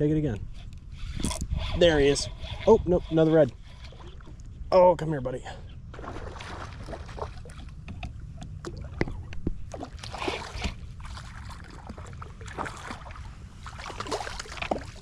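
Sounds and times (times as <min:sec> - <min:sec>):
wind rumble on microphone: 0:00.0 - 0:05.1, 0:05.7 - 0:15.0
fish splashing in water: 0:06.0 - 0:07.7, 0:09.7 - 0:15.0.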